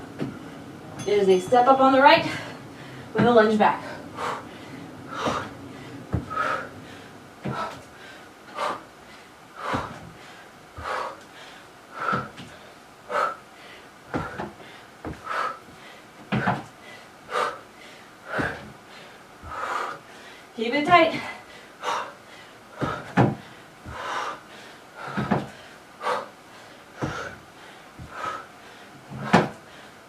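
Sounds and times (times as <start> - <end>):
feet landing thuds: 0.1 - 0.6, 2.2 - 8.7, 9.6 - 11.1, 12.0 - 12.6, 14.1 - 16.7, 18.3 - 18.8, 22.7 - 24.2, 25.0 - 25.6, 27.0 - 28.4, 29.0 - 29.6
woman breathing out hard: 3.8 - 20.5.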